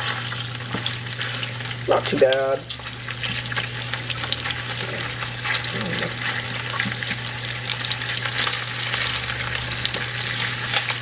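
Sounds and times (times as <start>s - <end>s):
chicken sizzling in a frying pan: 0.0s - 11.0s
steady low hum: 0.4s - 11.0s.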